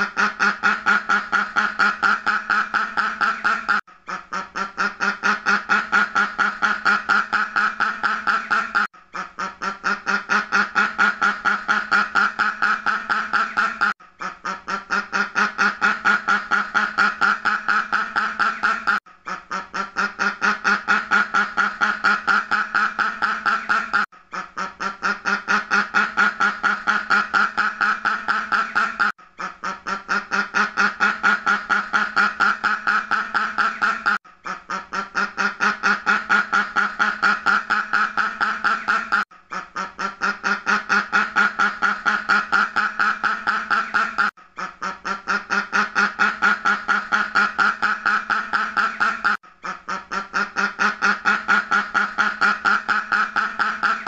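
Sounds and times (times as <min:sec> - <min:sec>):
duck quacking: 0:00.0 - 0:54.0.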